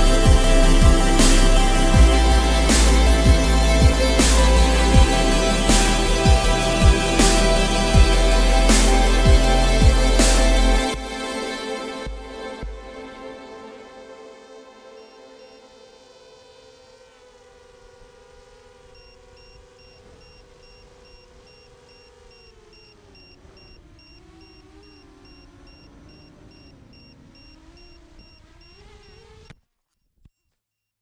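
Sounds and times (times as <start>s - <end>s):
rushing air noise: 0.0s - 11.8s
faint high beep: 19.0s - 29.2s.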